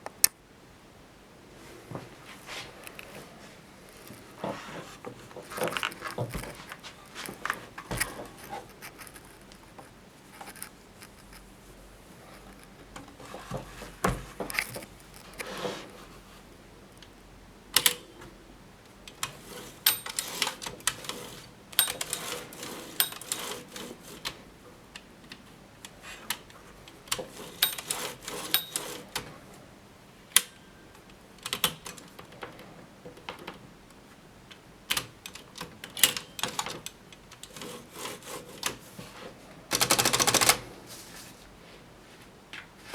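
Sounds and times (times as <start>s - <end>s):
typewriter key strikes: 19.9s - 21.0s, 21.8s - 22.4s.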